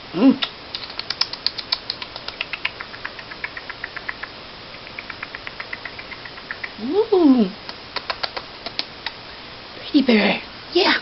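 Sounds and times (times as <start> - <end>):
bird beak clicking: 0.7 - 6.9, 7.6 - 9.2.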